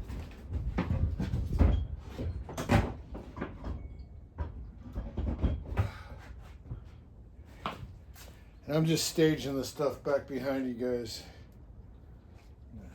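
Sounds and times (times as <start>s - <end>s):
knocks and clunks of hand tools: 0.1s - 6.9s.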